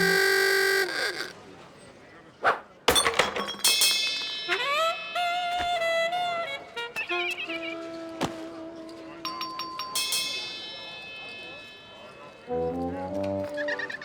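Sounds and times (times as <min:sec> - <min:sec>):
cartoon music: 0:00.0 - 0:01.2, 0:12.5 - 0:14.0.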